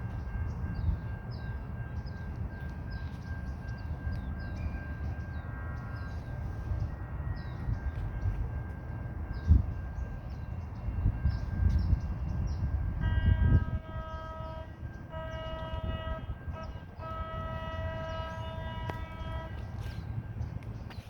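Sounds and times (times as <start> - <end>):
train rumble: 0.0 - 21.0
train horn chord: 11.0 - 20.6.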